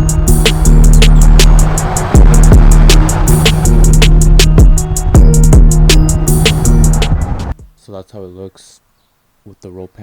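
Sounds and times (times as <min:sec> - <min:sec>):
electronic beat music: 0:00.0 - 0:07.7.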